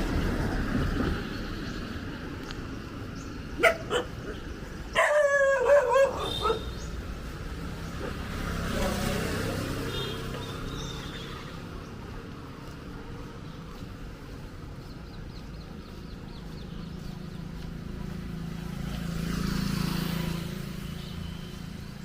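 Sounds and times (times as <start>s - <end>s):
street background hum: 0.0s - 22.0s
vehicle passing: 0.0s - 22.0s
dog barking and yelping: 3.6s - 6.7s.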